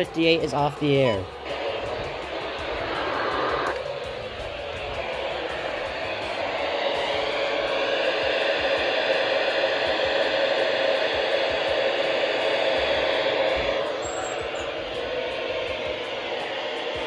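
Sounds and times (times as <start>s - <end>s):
radio static hiss: 1.5s - 9.8s.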